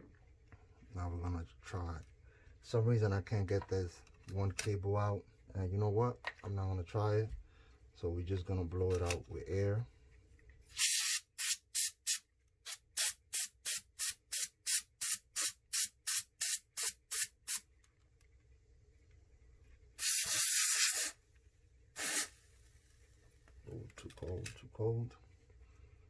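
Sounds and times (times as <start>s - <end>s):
compressed air spraying: 10.8s - 17.6s, 20.0s - 21.2s, 22.0s - 22.4s.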